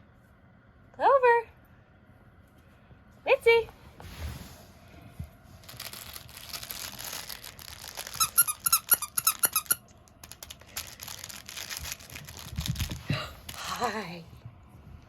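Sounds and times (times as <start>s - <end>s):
scuffling and rustling: 3.9s - 8.7s, 10.7s - 13.6s
squeaky dog toy squeaking: 8.0s - 9.8s.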